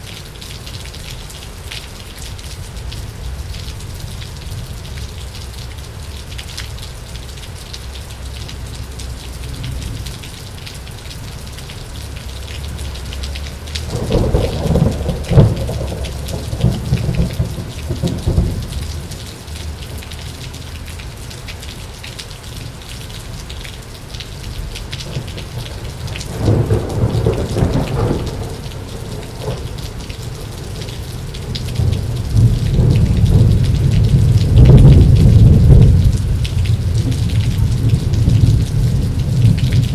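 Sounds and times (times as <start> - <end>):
heavy rain: 0.0 - 39.9
thunder rumbling: 11.9 - 20.6, 24.4 - 39.9.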